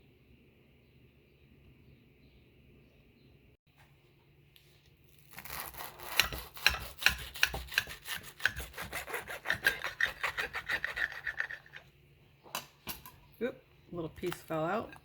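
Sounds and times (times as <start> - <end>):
knife sawing through bread: 5.3 - 11.8.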